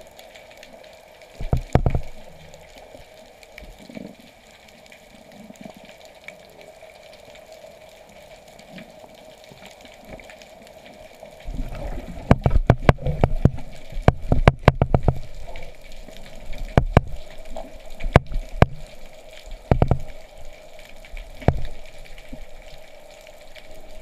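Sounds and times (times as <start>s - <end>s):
underwater clicks and knocks: 1.4s - 2.3s, 11.5s - 19.0s, 19.6s - 20.2s, 21.4s - 21.8s.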